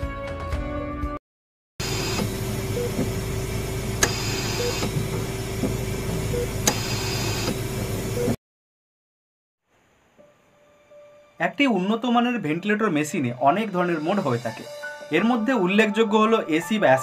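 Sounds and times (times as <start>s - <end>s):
ventilator machine hum and hiss: 1.8s - 8.3s
sharp clicks: 6.6s - 6.9s.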